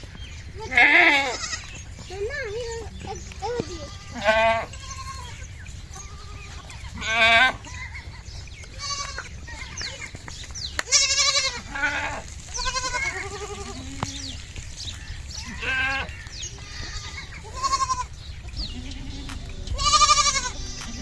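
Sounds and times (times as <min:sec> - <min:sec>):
goats bleating: 0:00.6 - 0:01.8, 0:03.4 - 0:08.1, 0:08.7 - 0:09.9, 0:10.9 - 0:14.2, 0:15.4 - 0:21.0.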